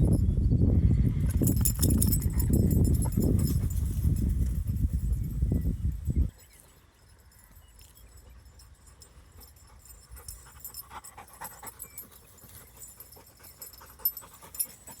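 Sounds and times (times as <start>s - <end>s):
dog panting softly: 9.3s - 15.0s.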